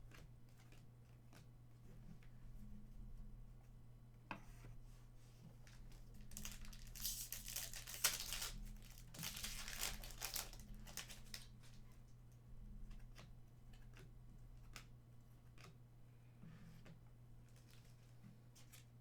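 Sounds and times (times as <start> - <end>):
wrapper crinkling and tearing: 6.1 - 11.8.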